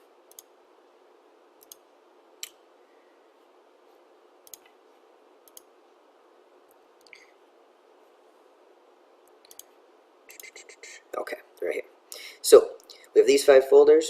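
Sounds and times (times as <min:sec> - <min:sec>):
steady low hiss: 0:00.0 - 0:14.0
computer mouse clicking: 0:00.3 - 0:00.5, 0:01.6 - 0:02.6, 0:04.4 - 0:04.8, 0:05.4 - 0:05.7, 0:09.3 - 0:10.8.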